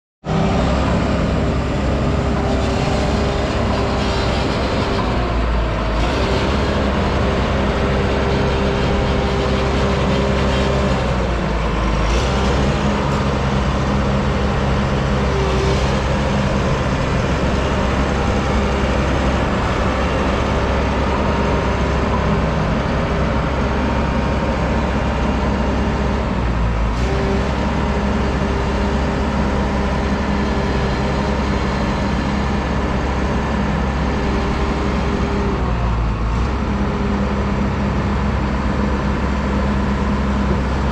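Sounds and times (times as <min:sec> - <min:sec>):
diesel engine running: 0:00.2 - 0:40.9.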